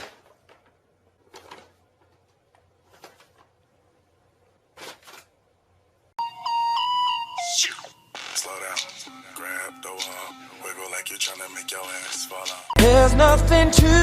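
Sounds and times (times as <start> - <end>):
music: 6.2 - 14.0.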